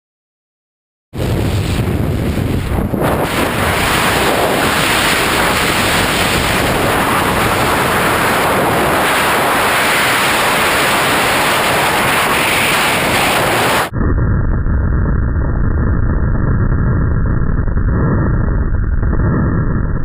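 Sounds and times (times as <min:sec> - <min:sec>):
wind rushing over microphone: 0:01.2 - 0:20.0.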